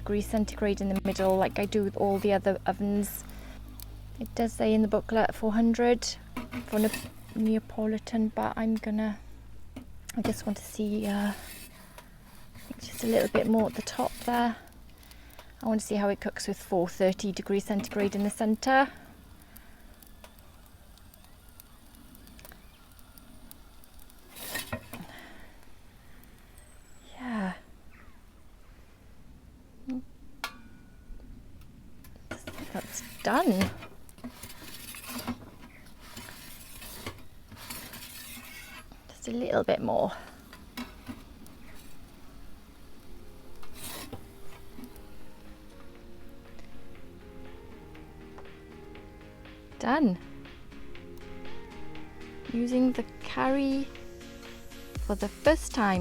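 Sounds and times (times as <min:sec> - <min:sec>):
charcoal fire crackling: 0:00.0 - 0:56.0
scrape or clatter: 0:06.4 - 0:07.5, 0:11.0 - 0:14.8, 0:24.3 - 0:25.1, 0:32.3 - 0:39.0, 0:43.6 - 0:44.2.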